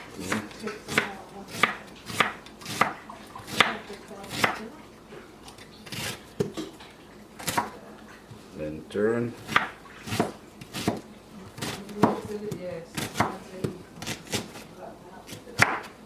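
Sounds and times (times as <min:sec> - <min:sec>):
knife chopping on cutting board: 0:00.0 - 0:04.7, 0:05.8 - 0:06.7, 0:07.4 - 0:08.5, 0:09.4 - 0:16.0.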